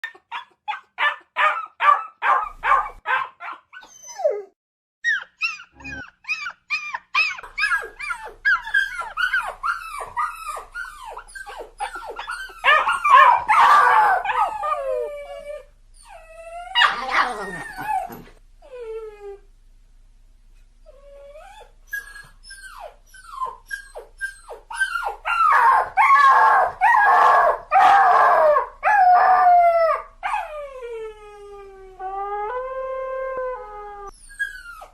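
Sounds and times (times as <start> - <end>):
dog whining: 3.4 - 19.4, 20.9 - 31.6, 33.6 - 34.9.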